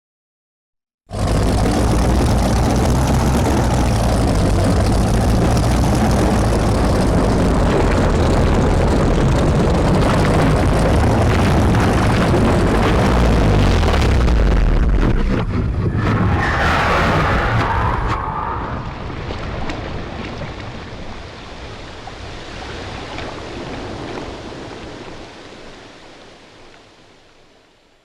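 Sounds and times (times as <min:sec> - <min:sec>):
loud engine roar: 0:01.1 - 0:19.5.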